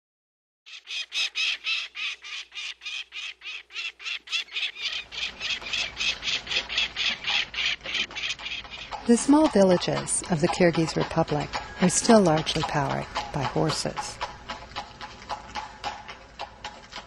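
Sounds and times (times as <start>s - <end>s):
bird squawking: 0.7s - 9.1s.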